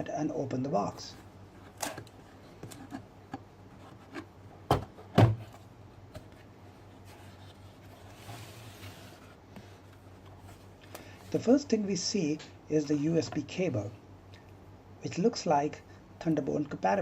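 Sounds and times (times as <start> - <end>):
cardboard box thumps: 4.7 - 5.5
cardboard rustling: 5.3 - 10.8.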